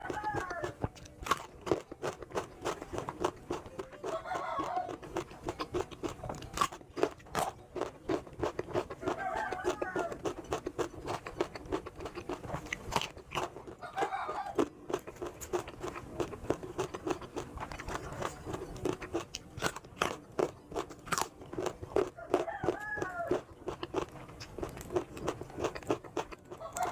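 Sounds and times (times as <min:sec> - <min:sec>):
chicken calling: 0:00.0 - 0:00.8, 0:04.0 - 0:05.0, 0:09.0 - 0:10.3, 0:13.8 - 0:14.7, 0:22.2 - 0:23.4, 0:26.5 - 0:26.9
fruit being bitten and chewed: 0:00.0 - 0:26.9.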